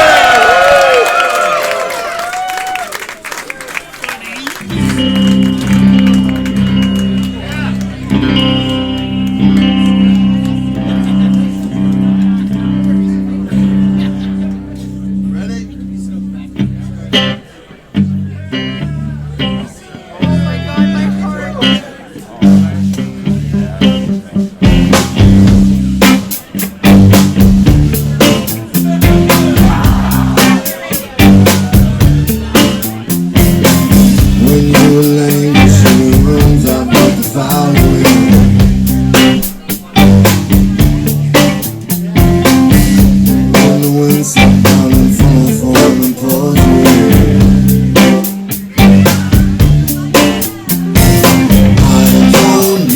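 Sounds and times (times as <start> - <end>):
drums: 0.0 - 3.2, 4.6 - 15.7, 19.4 - 52.9
electric guitar: 4.6 - 52.9
rock band playing live: 4.6 - 52.9
stepping bass line: 4.7 - 15.6, 22.5 - 52.9.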